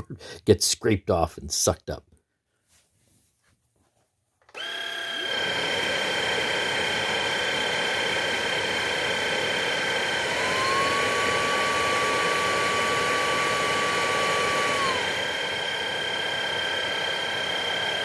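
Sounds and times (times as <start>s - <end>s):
stick vacuum running: 4.4s - 18.0s.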